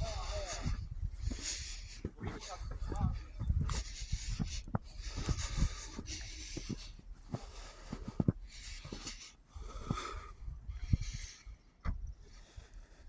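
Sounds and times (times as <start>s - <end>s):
footsteps crunching in snow: 0.0s - 10.2s.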